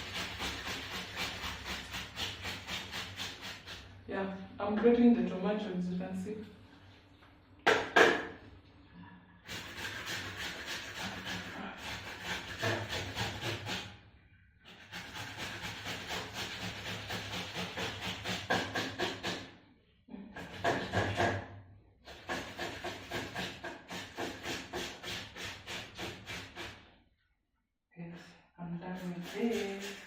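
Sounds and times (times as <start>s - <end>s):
tomatoes rasping on a grater: 0.0s - 3.9s, 9.5s - 13.9s, 14.7s - 19.4s, 28.9s - 30.0s.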